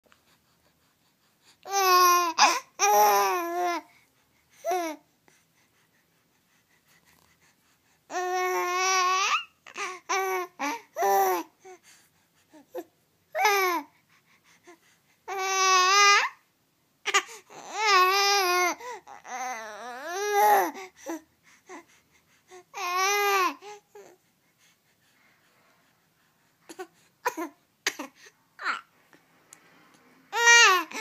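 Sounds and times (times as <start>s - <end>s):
baby squealing and cooing: 8.1s - 10.4s, 28.6s - 28.9s, 30.3s - 31.0s.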